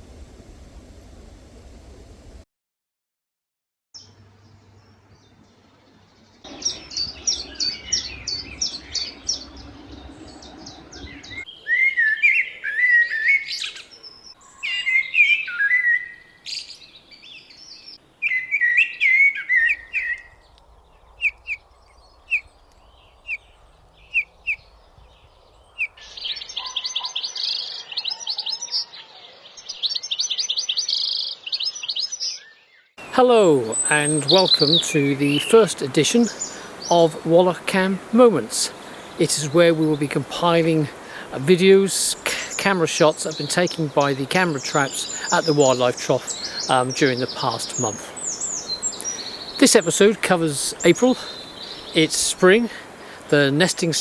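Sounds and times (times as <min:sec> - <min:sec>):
small songbirds singing: 0:04.0 - 0:54.0.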